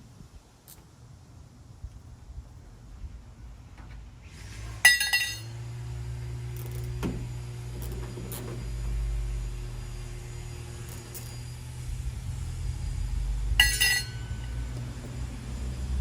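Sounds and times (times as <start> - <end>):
wind rumble on microphone: 0.0 - 4.6, 8.6 - 16.0
metal clinking: 4.8 - 5.6, 10.4 - 11.7, 13.5 - 16.0.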